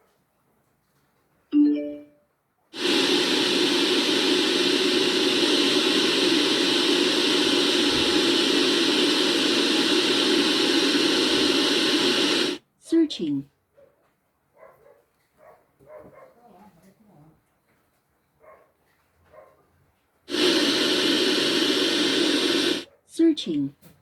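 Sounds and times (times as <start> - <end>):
radio static hiss: 2.8 - 12.6, 20.3 - 23.5.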